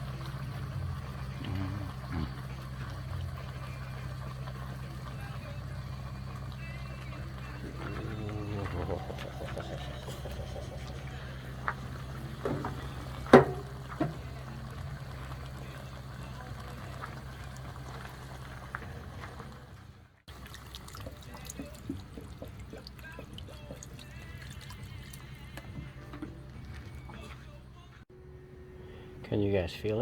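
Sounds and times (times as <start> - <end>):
steady low hum: 0.0 - 19.7
liquid bubbling in a pot: 0.0 - 26.7.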